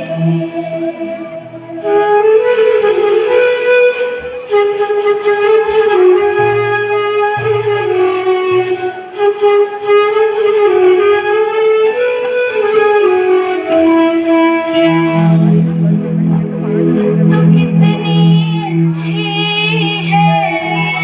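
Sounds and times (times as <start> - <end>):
deep held note: 0.0 - 4.8
strings and guitar accompaniment: 0.0 - 21.0.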